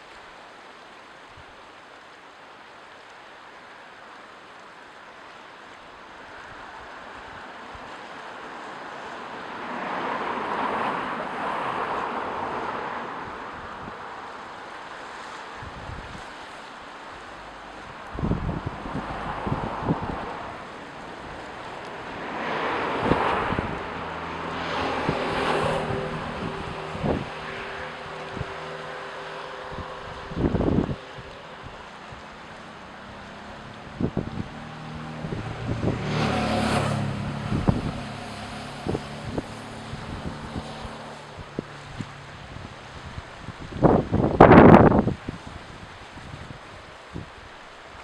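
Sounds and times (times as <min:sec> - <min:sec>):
ocean waves washing in: 0:00.0 - 0:48.0
wind buffeting microphone: 0:11.5 - 0:48.0.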